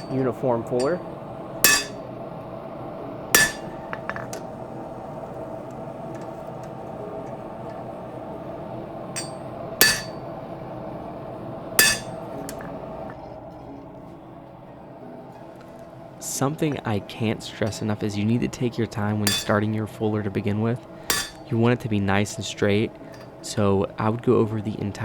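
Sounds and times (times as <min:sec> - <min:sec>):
hammer blows on metal: 0:00.0 - 0:02.1, 0:03.4 - 0:04.5, 0:09.2 - 0:10.3, 0:11.8 - 0:12.7, 0:19.3 - 0:19.7, 0:21.1 - 0:21.5
faint metal clinks: 0:01.7 - 0:02.0, 0:09.2 - 0:10.2, 0:11.8 - 0:13.2, 0:19.3 - 0:19.6, 0:21.1 - 0:21.5.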